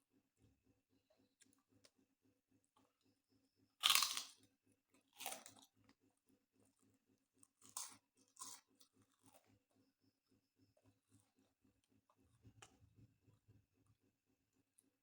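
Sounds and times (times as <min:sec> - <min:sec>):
crunching of crisp fried food: 0:03.8 - 0:06.0, 0:06.6 - 0:09.7.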